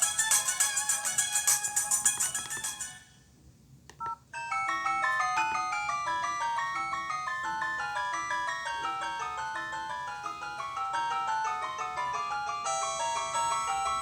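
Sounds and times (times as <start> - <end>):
phone clicks: 3.9 - 4.2
phone ringtone melody: 4.0 - 14.0.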